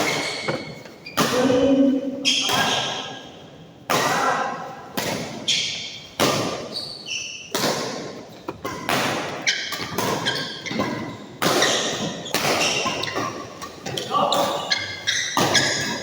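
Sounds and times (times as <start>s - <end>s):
shoes squeaking on court: 0.0s - 3.0s, 5.4s - 7.7s, 8.4s - 16.0s
racket hitting shuttlecock: 5.0s - 6.8s, 7.4s - 14.6s, 15.3s - 16.0s.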